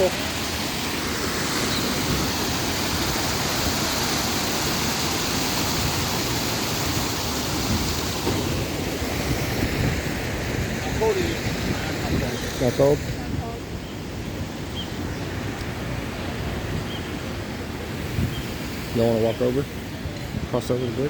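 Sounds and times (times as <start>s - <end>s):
small waterfall splashing: 0.0s - 13.2s.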